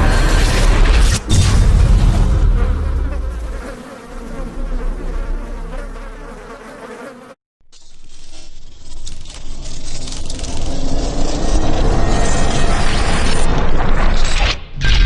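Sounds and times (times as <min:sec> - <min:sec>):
insect wings buzzing: 0:02.2 - 0:07.4.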